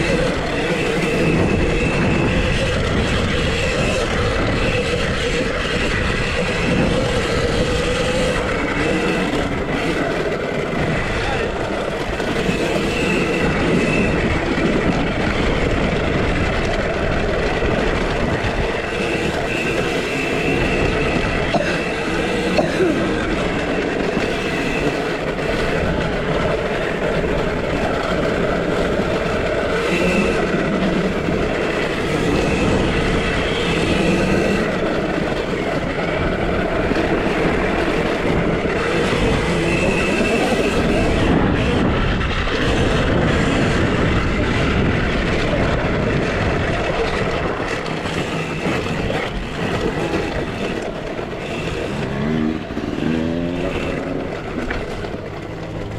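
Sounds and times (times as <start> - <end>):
drivetrain rushing noise: 0.0 - 55.9.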